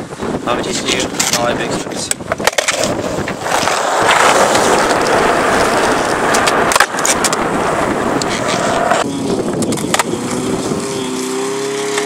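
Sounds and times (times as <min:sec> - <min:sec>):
skateboard wheels rolling on pavement: 0:00.0 - 0:12.0
skateboard clacks: 0:02.0 - 0:07.5, 0:09.6 - 0:10.1.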